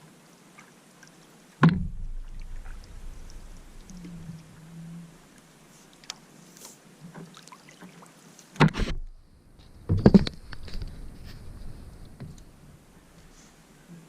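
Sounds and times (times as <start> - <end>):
paddle strokes in water: 0.5 - 9.0
small knocks on boat: 1.6 - 3.8, 9.8 - 11.0
water dripping: 1.8 - 6.3.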